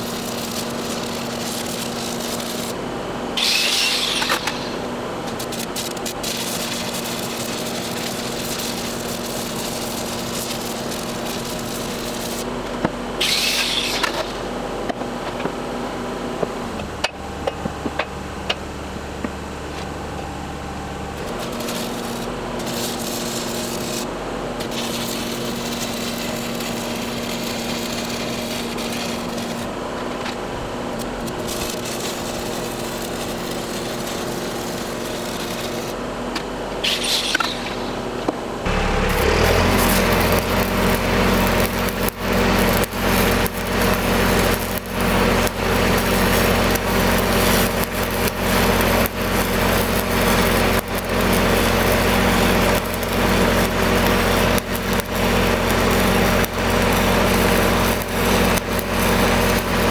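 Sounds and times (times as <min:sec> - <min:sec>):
loud hissing bursts: 0:00.0 - 0:02.7, 0:03.4 - 0:12.5, 0:13.2 - 0:14.6, 0:21.2 - 0:29.7, 0:31.0 - 0:36.0, 0:36.8 - 0:59.9
engine running: 0:00.0 - 0:09.0, 0:25.5 - 0:59.9.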